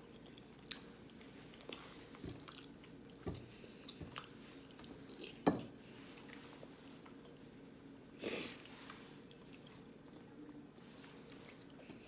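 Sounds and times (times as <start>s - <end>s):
person chewing food: 0.0s - 6.4s.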